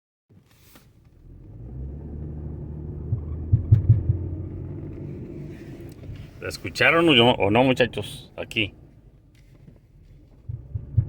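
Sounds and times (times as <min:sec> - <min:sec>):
vehicle rolling with low rumble: 0:00.3 - 0:11.0
knocks from underneath vehicle: 0:03.1 - 0:04.4, 0:10.4 - 0:11.0.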